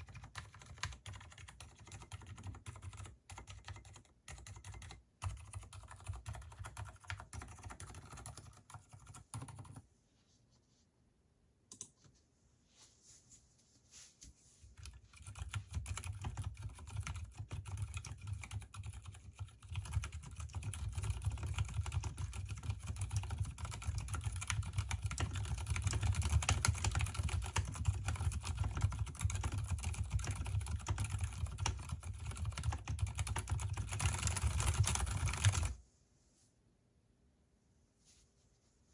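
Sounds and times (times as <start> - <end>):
muted mechanical keyboard typing: 0.0 - 9.8, 14.8 - 35.8.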